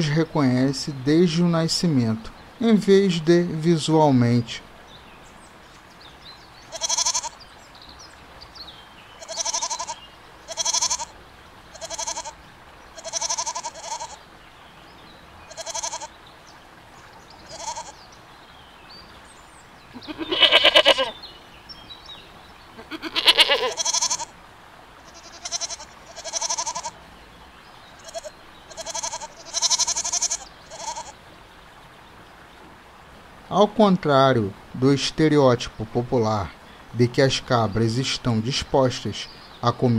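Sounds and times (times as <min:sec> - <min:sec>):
goats bleating: 0:06.7 - 0:07.4, 0:09.2 - 0:14.2, 0:15.5 - 0:16.2, 0:17.4 - 0:18.0, 0:19.9 - 0:21.2, 0:22.8 - 0:24.4, 0:25.0 - 0:27.0, 0:28.0 - 0:31.2.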